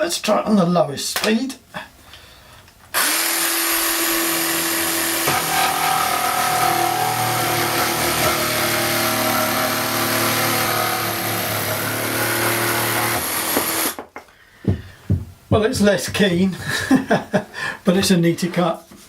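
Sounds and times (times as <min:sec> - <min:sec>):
jigsaw sawing wood: 0:03.0 - 0:14.0.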